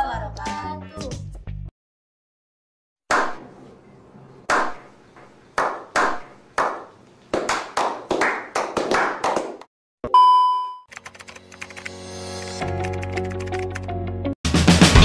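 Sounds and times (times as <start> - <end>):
hand claps: 4.5 - 4.8, 5.6 - 9.7.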